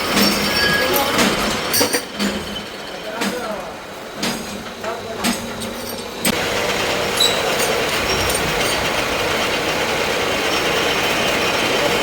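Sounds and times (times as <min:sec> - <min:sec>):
metal lathe running: 0:05.8 - 0:12.0.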